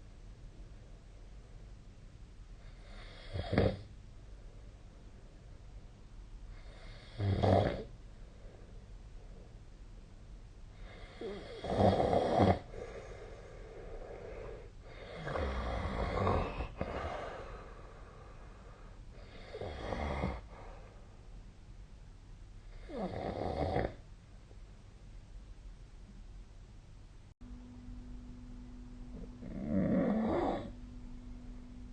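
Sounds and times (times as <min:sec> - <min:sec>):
person snoring: 0:06.7 - 0:07.9, 0:10.8 - 0:13.1, 0:13.9 - 0:17.8, 0:19.2 - 0:20.7, 0:22.8 - 0:24.0, 0:29.2 - 0:30.8.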